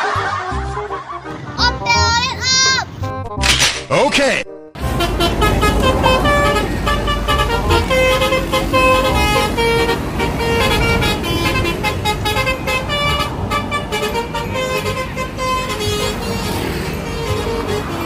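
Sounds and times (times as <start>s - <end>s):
bus horn melody: 4.8s - 18.0s.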